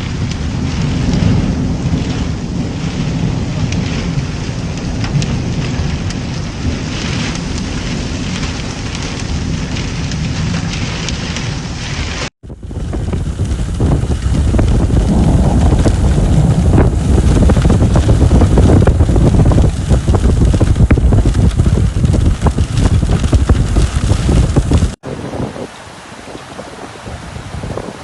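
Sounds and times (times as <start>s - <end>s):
storm wind buffeting microphone: 0.0s - 28.0s.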